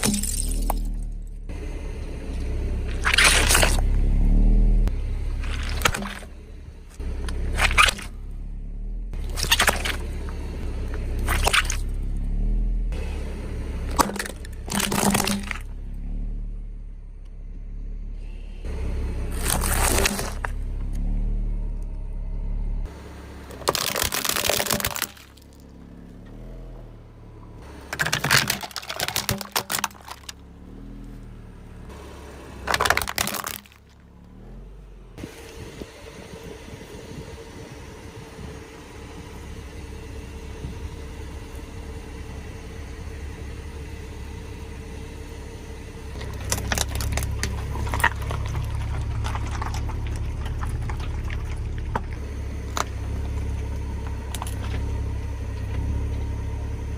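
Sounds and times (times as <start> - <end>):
tyres crunching objects: 0.0 - 1.2, 2.8 - 4.1, 5.2 - 8.3, 9.2 - 12.0, 13.9 - 15.7, 19.2 - 21.1, 22.9 - 26.5, 27.6 - 34.4, 46.1 - 55.9
low engine rumble: 0.0 - 56.9.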